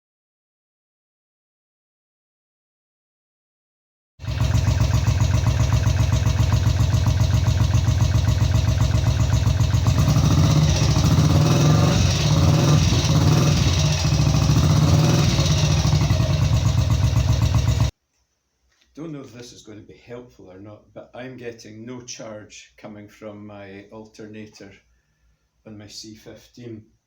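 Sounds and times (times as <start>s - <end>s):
motorcycle engine idling and revving: 4.2s - 17.9s.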